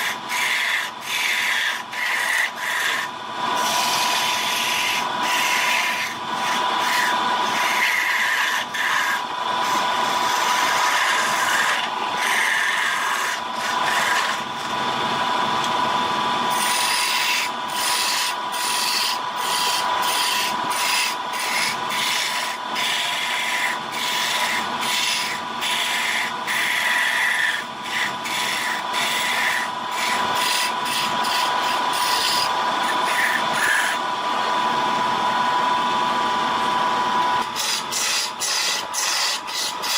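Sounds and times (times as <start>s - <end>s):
tool rasping on spinning wood: 0.0s - 15.5s, 16.5s - 34.6s, 37.2s - 39.9s
wood lathe whine: 0.0s - 39.9s.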